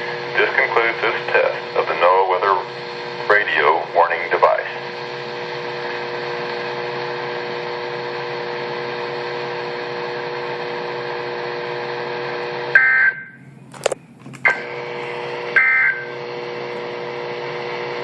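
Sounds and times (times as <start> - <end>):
radio hum and hiss: 0.0 - 8.6, 13.7 - 17.6.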